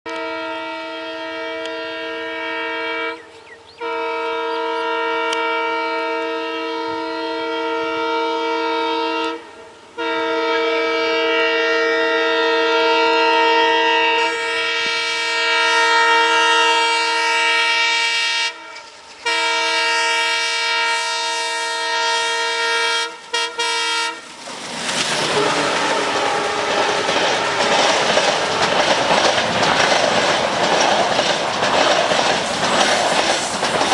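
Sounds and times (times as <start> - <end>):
locomotive horn blasts: 0.1 - 24.3, 25.2 - 27.9
train wheels clattering over rails: 24.2 - 33.9.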